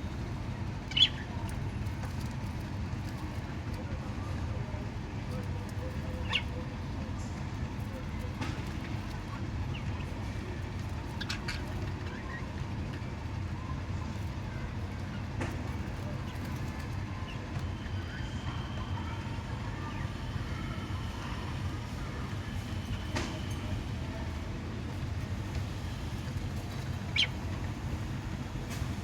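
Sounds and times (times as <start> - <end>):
budgerigars chirping: 0.9 - 1.3, 11.1 - 12.3, 27.0 - 27.4.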